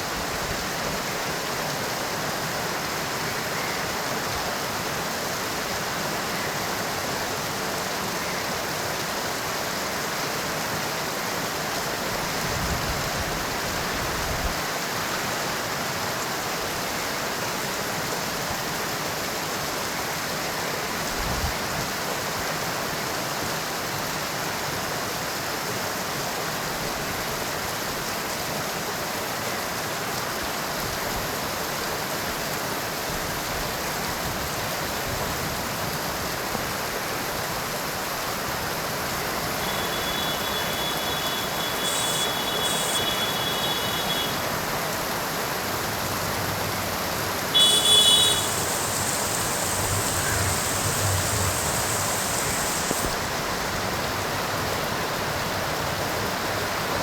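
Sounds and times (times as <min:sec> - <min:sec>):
heavy rain hissing: 0:30.8 - 0:57.0
thin high tones: 0:39.6 - 0:44.5, 0:47.5 - 0:53.3.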